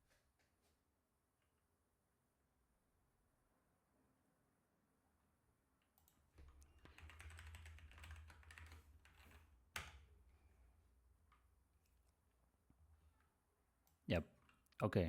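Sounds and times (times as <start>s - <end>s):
typing on computer keyboard: 6.0s - 10.1s.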